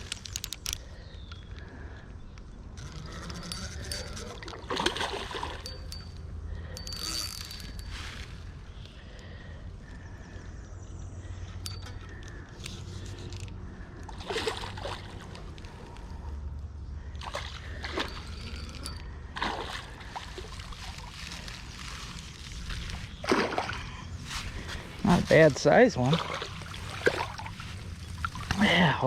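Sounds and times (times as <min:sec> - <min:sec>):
fish splashing in water: 0:14.1 - 0:15.5, 0:19.4 - 0:24.1, 0:26.0 - 0:28.8.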